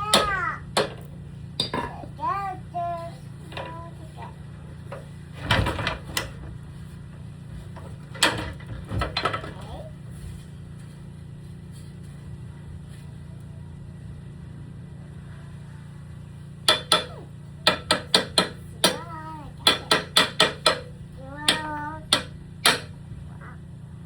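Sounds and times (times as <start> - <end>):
hammer striking ladder: 0.0 - 2.0, 16.6 - 23.0
steady low hum: 0.0 - 24.0.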